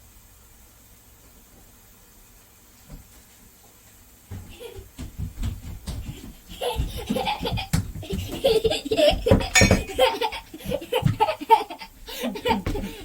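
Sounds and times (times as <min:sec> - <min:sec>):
person laughing: 0:04.4 - 0:04.9, 0:06.0 - 0:13.0.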